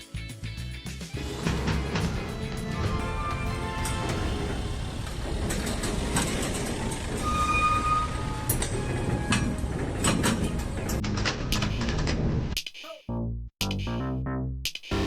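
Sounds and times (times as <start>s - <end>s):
heavy machine rumbling: 1.2s - 12.5s
high squeal: 2.4s - 5.2s, 6.7s - 10.0s.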